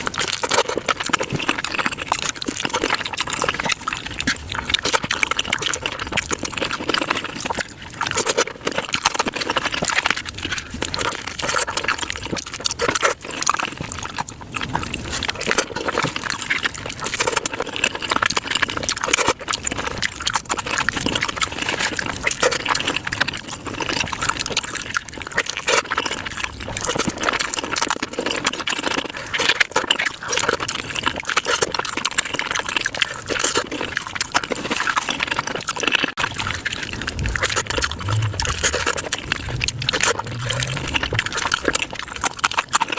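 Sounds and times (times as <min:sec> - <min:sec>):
crunching and chewing: 0:00.0 - 0:42.9.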